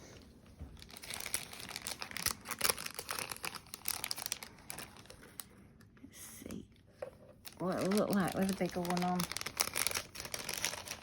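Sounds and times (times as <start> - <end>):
plastic packaging crinkling: 0.7 - 5.6, 7.4 - 11.0.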